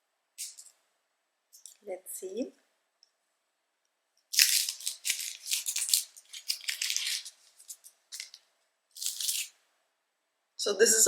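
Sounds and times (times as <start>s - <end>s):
wrapper crinkling: 4.3s - 8.4s, 9.0s - 9.6s.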